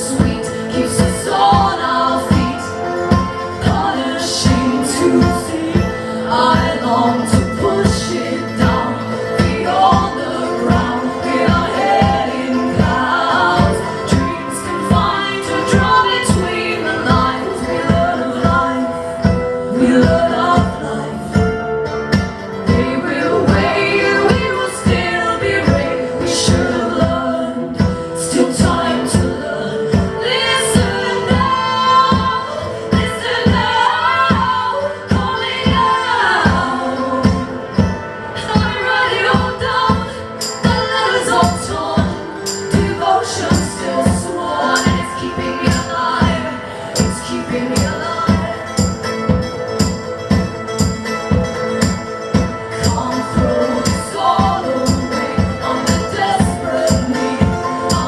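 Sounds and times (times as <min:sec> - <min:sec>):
strummed guitar: 0:00.0 - 0:58.0
women singing together: 0:00.0 - 0:58.0
tambourine: 0:39.3 - 0:46.4, 0:47.0 - 0:58.0.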